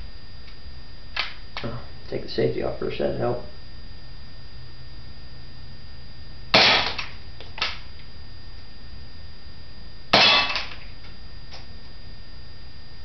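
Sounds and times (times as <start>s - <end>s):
airsoft pistol shots: 6.6s - 7.8s, 10.2s - 10.8s.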